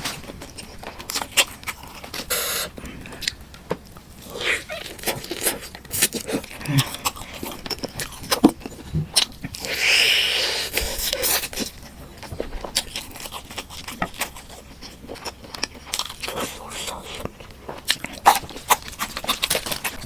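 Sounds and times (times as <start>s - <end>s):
wet chewing clicks and smacks: 11.2s - 20.0s.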